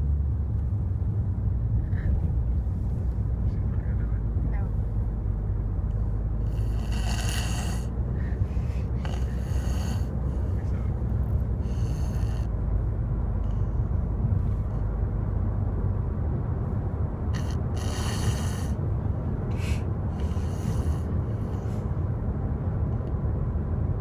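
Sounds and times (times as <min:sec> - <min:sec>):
car rumble: 0:00.0 - 0:24.0
child snoring: 0:06.4 - 0:10.7, 0:11.6 - 0:12.5, 0:17.3 - 0:18.8, 0:19.5 - 0:21.8.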